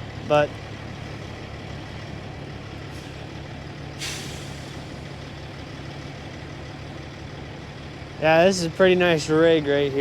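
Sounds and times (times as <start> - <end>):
diesel truck engine idling: 0.0 - 10.0
air brakes hissing: 2.9 - 3.4, 4.0 - 5.1.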